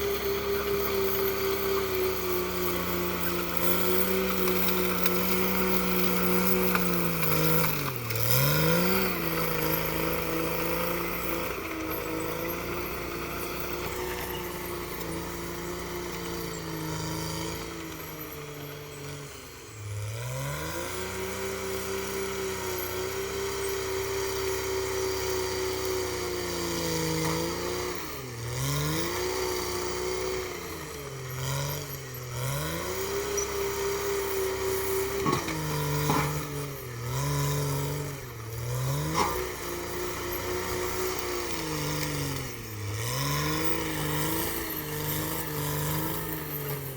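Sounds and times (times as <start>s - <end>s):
bulldozer diesel engine running: 0.0s - 46.9s.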